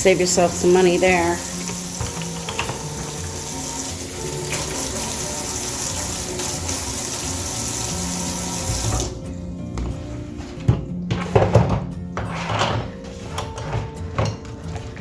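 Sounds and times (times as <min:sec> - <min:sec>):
water running from a tap: 0:00.0 - 0:09.2.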